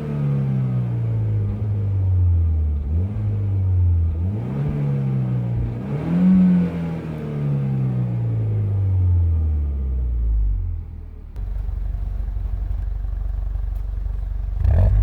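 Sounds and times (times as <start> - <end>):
car engine revving: 0.0 - 10.0, 14.5 - 15.0.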